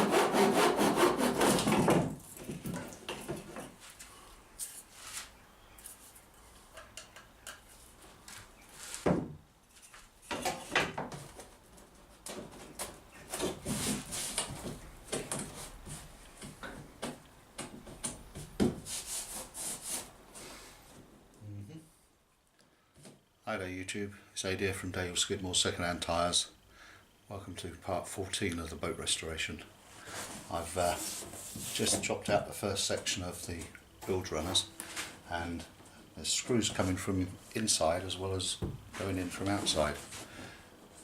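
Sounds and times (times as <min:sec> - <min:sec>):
tool scraping wood: 0:00.0 - 0:02.1.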